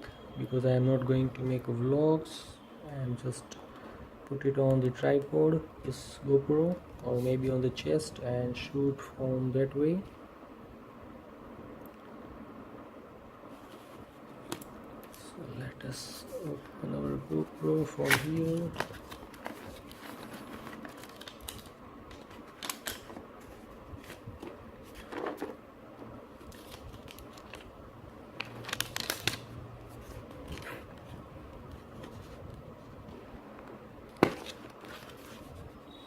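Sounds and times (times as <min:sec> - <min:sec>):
plastic and cardboard rustling: 0:16.0 - 0:25.6, 0:26.3 - 0:33.3, 0:34.1 - 0:35.9.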